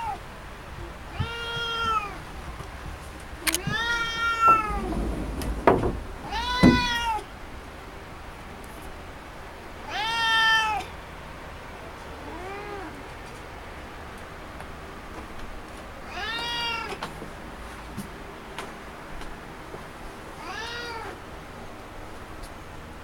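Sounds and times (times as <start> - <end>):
cat meowing: 1.1 - 2.2, 3.6 - 4.8, 6.3 - 7.3, 9.9 - 10.9, 16.1 - 17.0, 20.4 - 21.2
sharp knocks: 3.6 - 7.3.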